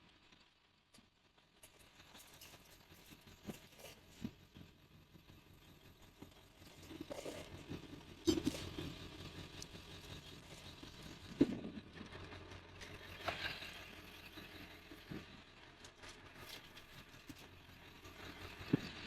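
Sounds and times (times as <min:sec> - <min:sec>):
scrap metal scraping and clatter: 0:06.2 - 0:19.0.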